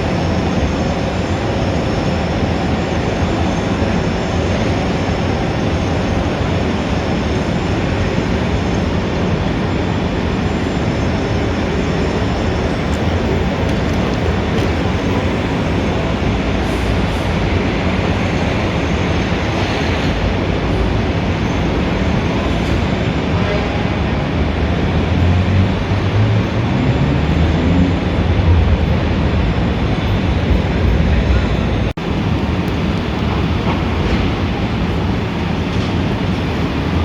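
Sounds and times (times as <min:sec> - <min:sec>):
city street traffic: 0:00.0 - 0:37.0
heavy engine rumble: 0:00.0 - 0:37.0.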